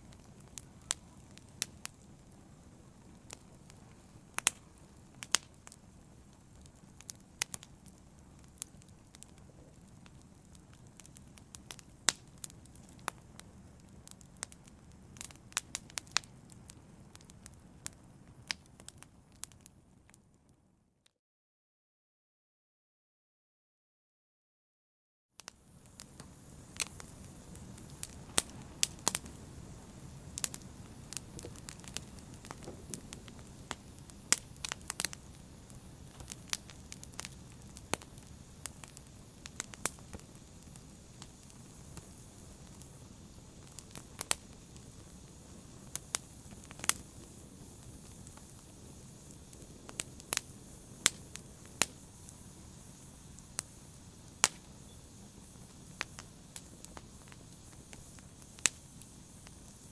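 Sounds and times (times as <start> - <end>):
fire crackles and pops: 0.0 - 20.7, 25.4 - 59.9
fire rushing: 25.6 - 59.9.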